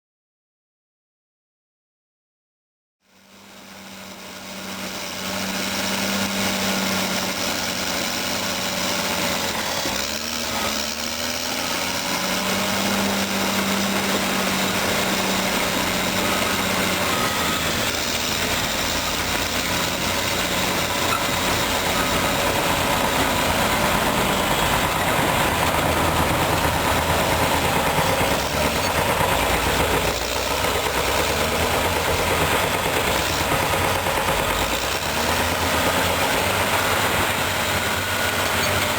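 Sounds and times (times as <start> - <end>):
bulldozer diesel engine running: 3.2 - 38.9.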